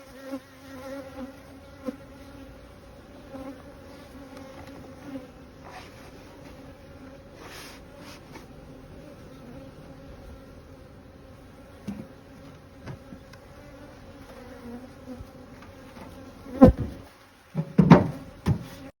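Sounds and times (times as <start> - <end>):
honeybees buzzing: 0.0 - 18.9
wooden hive boxes knocking: 16.6 - 17.0, 17.6 - 18.7.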